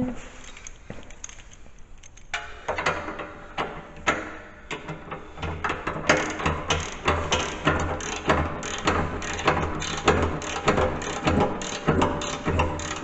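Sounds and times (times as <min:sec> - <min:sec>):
ratchet wrench clicking: 0:06.1 - 0:13.0.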